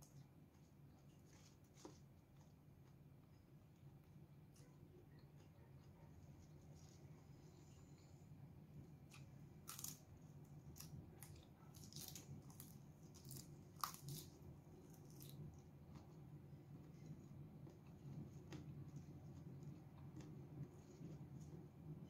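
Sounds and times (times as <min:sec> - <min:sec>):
chewing raw vegetables: 0:09.0 - 0:21.5.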